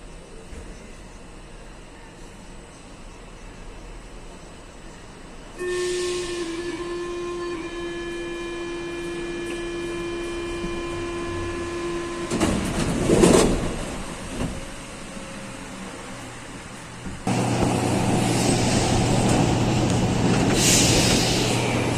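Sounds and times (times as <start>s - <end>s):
door warning tone: 7.1s - 12.6s
sliding doors closing with thud: 12.2s - 15.0s.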